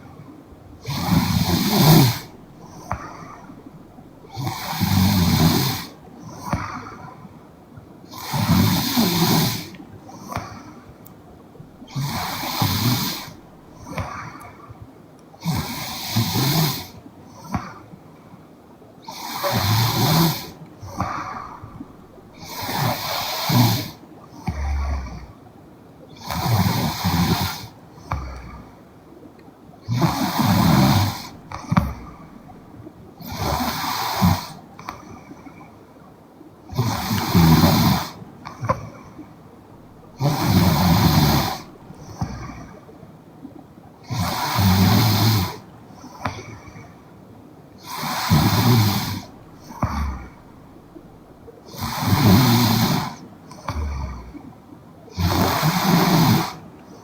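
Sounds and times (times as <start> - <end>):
soft breath: 0.0 - 7.6, 8.3 - 18.6, 19.3 - 36.1, 47.8 - 54.6
woman snoring: 0.8 - 3.4, 4.3 - 6.0, 8.1 - 9.7, 11.9 - 13.4, 19.1 - 21.7, 22.4 - 25.3, 29.9 - 32.2, 36.7 - 38.2, 40.2 - 41.7, 47.8 - 50.5, 51.7 - 54.4, 55.2 - 56.6.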